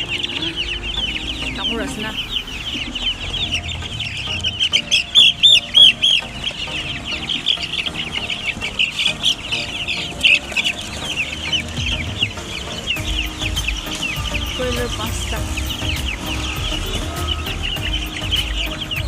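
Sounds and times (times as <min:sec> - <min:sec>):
chickens cheeping: 0:00.0 - 0:19.0.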